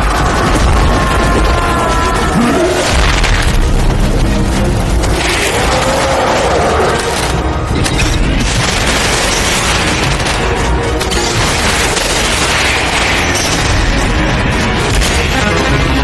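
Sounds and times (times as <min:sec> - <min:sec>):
booming effects: 0:00.0 - 0:06.7
loud dense music: 0:00.0 - 0:16.0.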